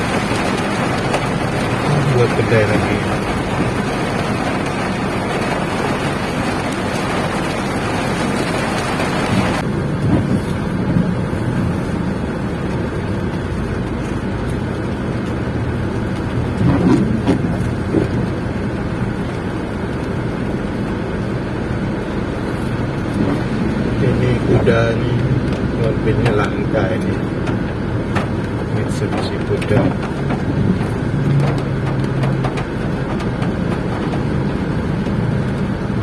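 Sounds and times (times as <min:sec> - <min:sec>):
rain hiss: 0:00.0 - 0:36.0
car cabin hum: 0:22.2 - 0:36.0.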